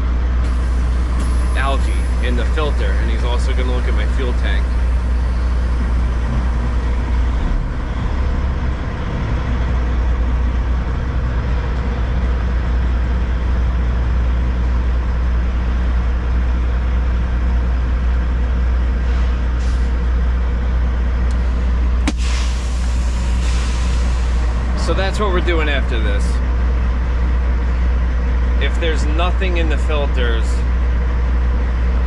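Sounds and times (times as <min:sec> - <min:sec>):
diesel engine droning: 0:00.0 - 0:32.0
road noise: 0:00.0 - 0:32.0.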